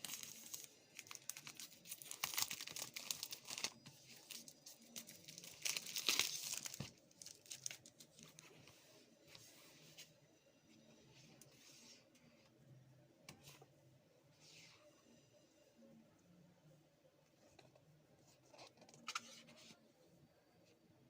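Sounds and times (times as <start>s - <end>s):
packaging crackling: 0.0s - 8.3s.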